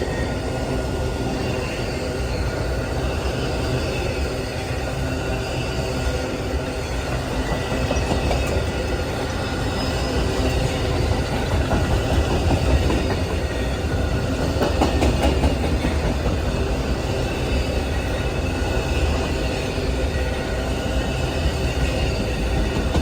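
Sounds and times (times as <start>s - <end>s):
train wheels rumbling on rails: 0.0s - 23.0s
wheels clicking over rail joints: 7.1s - 16.9s.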